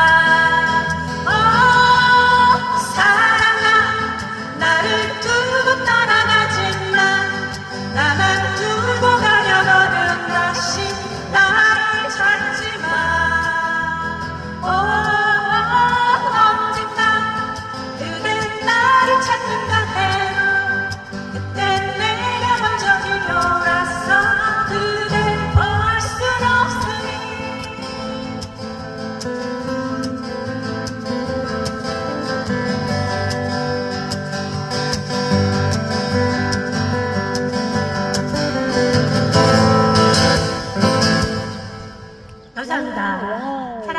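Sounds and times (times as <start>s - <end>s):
trot song sung over backing track: 0.0s - 29.4s
strummed acoustic guitar music: 0.0s - 42.5s.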